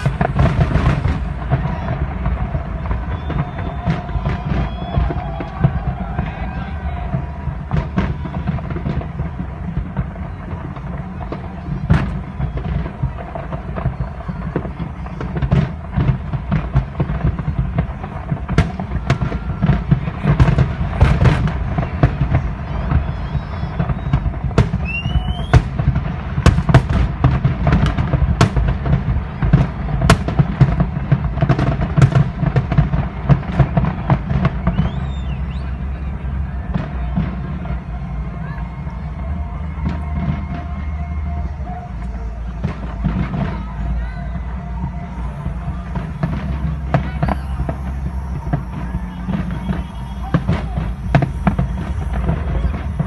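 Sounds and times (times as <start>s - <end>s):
fireworks bursting: 0.0s - 53.0s
low rumble: 32.2s - 53.0s.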